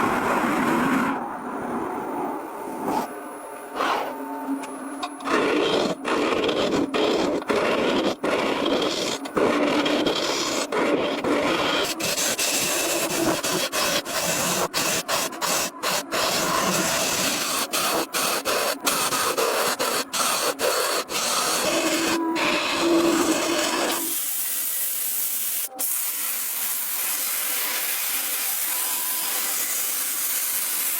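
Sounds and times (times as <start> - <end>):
abrasive scraping on wood: 5.0 - 16.8.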